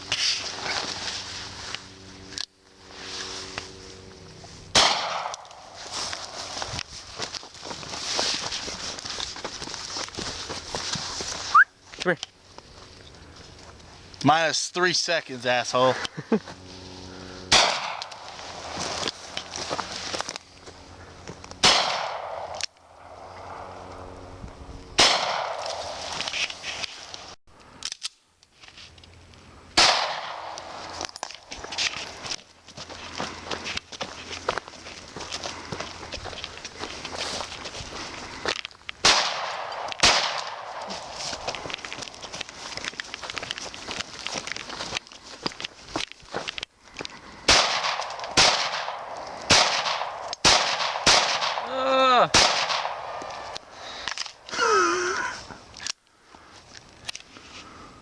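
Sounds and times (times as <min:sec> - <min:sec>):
pistol shot echoing: 0:04.7 - 0:05.4, 0:17.5 - 0:18.1, 0:21.6 - 0:22.6, 0:25.0 - 0:26.0, 0:29.8 - 0:30.6, 0:39.0 - 0:40.8, 0:47.5 - 0:51.7, 0:52.3 - 0:53.2
person crying out: 0:51.6 - 0:52.4, 0:54.5 - 0:55.4.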